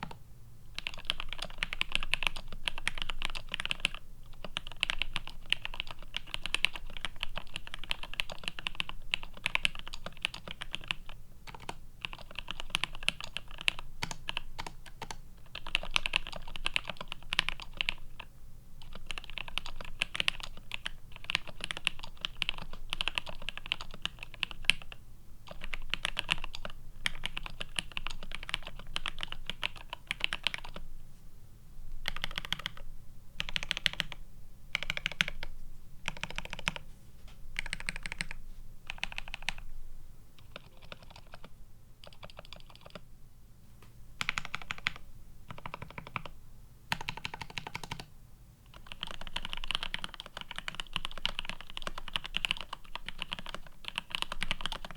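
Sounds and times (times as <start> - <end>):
keyboard typing clatter: 0.8 - 18.0, 18.8 - 24.9, 32.1 - 32.8, 36.1 - 36.8, 37.6 - 39.6, 40.4 - 43.0, 44.2 - 46.3, 46.9 - 48.1, 48.7 - 54.9.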